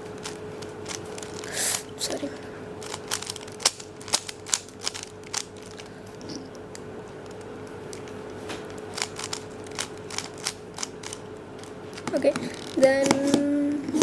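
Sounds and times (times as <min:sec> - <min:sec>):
puzzle cube clicking: 0:02.8 - 0:05.8, 0:07.3 - 0:11.2.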